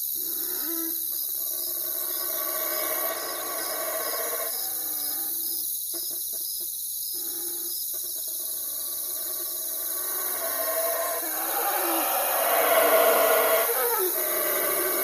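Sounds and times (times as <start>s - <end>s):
crickets and insects chirring: 0.0s - 15.0s
owl hooting: 9.2s - 15.0s.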